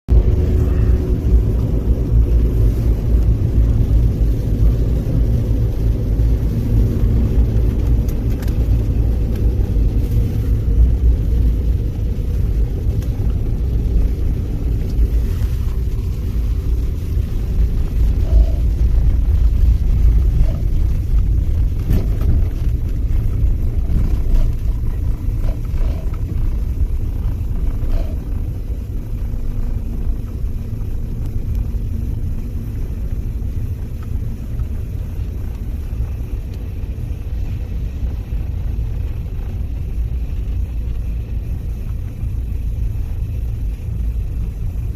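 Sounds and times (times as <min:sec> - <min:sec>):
train rumbling along track: 0:00.1 - 0:44.9.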